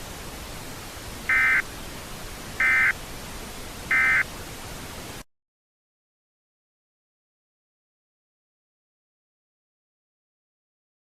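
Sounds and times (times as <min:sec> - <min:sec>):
steady hiss: 0:00.0 - 0:05.3
short electronic data bursts: 0:01.3 - 0:01.6, 0:02.6 - 0:03.0, 0:03.9 - 0:04.3.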